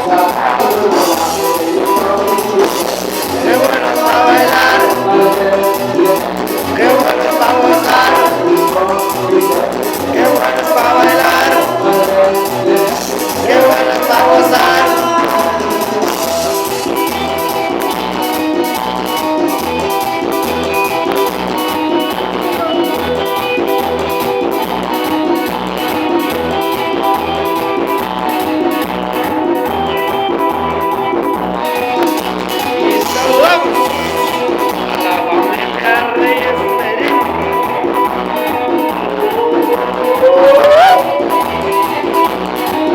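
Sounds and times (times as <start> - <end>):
band music with guitar: 0.0 - 42.9.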